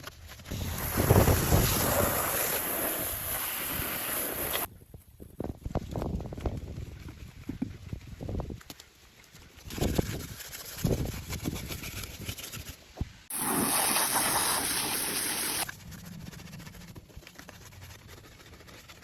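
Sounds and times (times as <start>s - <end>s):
water spraying hiss: 0.5s - 4.7s, 13.3s - 15.6s.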